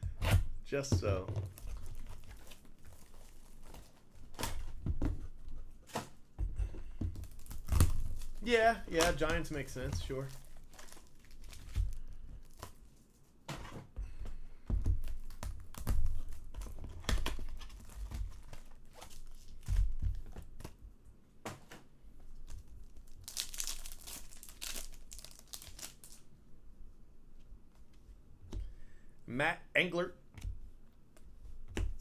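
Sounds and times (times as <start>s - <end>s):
foil wrappers tearing and crinkling: 1.6s - 4.8s, 7.2s - 13.3s, 15.1s - 19.9s, 22.4s - 26.3s
long wrapper rip: 23.1s - 26.3s.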